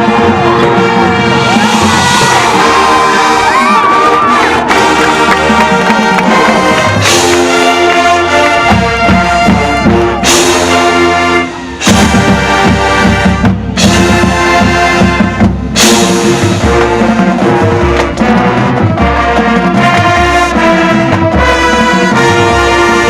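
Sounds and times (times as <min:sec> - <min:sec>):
marching band playing: 0:00.0 - 0:23.0.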